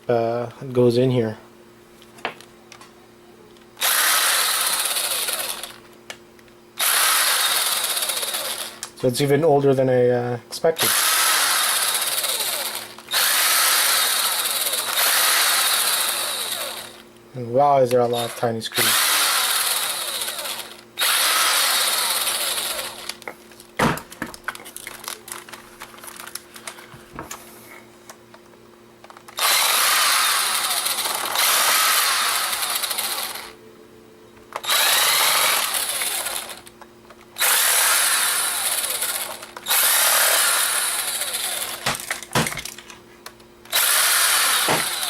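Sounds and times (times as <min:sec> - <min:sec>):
electric screwdriver running: 0:03.8 - 0:05.8, 0:06.8 - 0:08.9, 0:10.8 - 0:17.0, 0:18.1 - 0:23.2, 0:29.3 - 0:33.6, 0:34.6 - 0:36.7, 0:37.4 - 0:42.2, 0:43.7 - 0:45.0
handling and clicks: 0:23.1 - 0:27.4.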